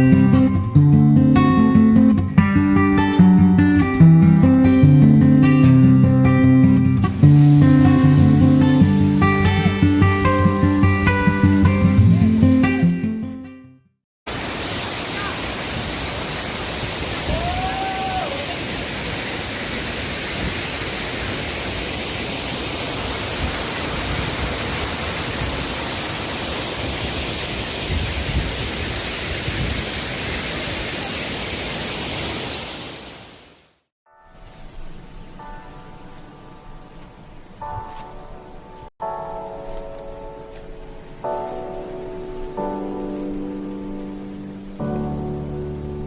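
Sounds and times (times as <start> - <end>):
guitar music: 0.0 - 13.8
waterfall rushing: 7.1 - 12.6, 14.3 - 33.8.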